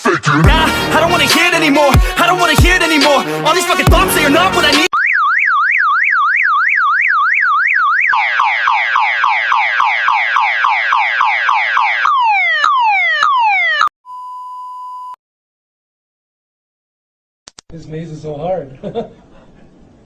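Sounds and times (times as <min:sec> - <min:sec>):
car alarm siren: 0:04.9 - 0:13.9.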